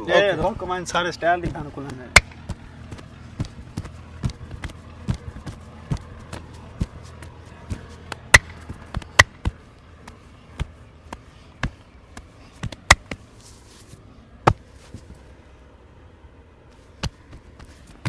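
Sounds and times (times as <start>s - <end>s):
massage smacks: 1.4s - 13.2s.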